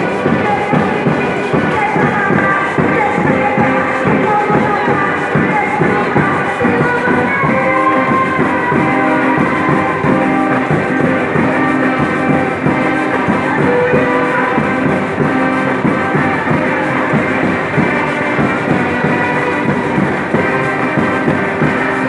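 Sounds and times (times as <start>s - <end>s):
steady drum beat: 0.0s - 22.0s
orchestra holding notes: 6.5s - 22.0s.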